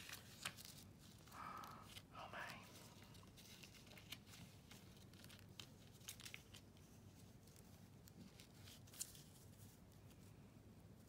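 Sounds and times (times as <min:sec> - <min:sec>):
paper and leaves rustling: 0:00.0 - 0:10.3
small crackles: 0:00.0 - 0:10.3.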